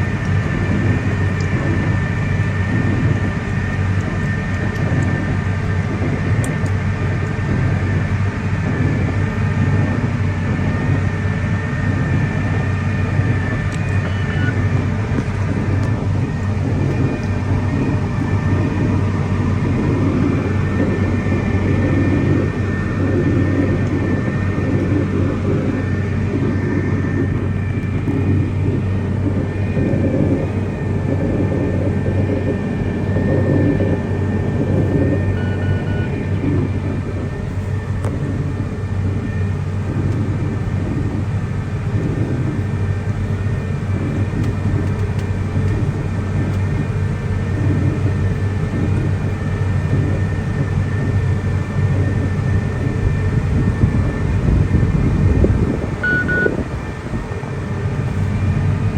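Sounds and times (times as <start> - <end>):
cotton picker diesel drone: 0.0 - 58.9
high whine: 0.0 - 58.9.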